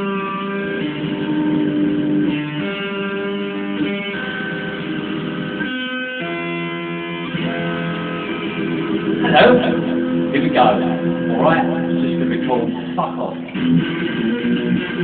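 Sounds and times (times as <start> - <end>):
electric guitar chords: 0.0 - 15.0.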